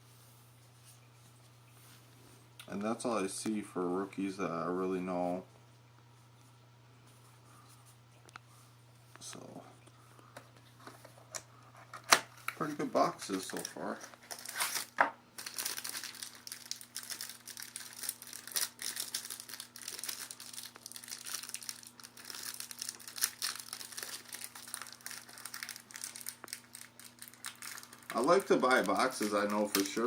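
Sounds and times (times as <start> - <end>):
faint steady hum: 0.0 - 30.0
plastic wrapping crinkling: 10.6 - 30.0.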